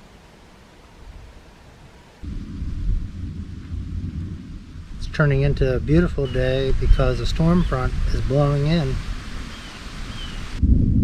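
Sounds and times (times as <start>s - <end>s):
outdoor hiss: 0.0s - 10.6s
thunder rumbling: 2.2s - 11.0s
faint bird chirps: 9.5s - 10.5s.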